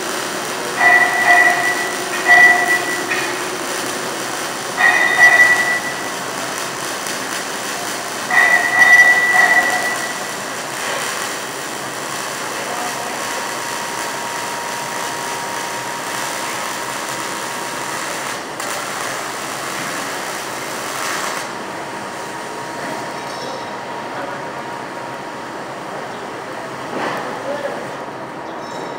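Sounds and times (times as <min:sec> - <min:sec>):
welding arc crackling hiss: 0:00.0 - 0:23.2.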